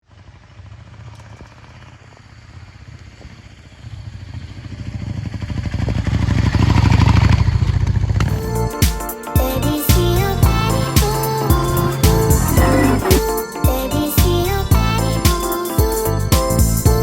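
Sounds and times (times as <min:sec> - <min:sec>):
motorcycle engine running: 0:00.0 - 0:08.3, 0:11.5 - 0:13.3.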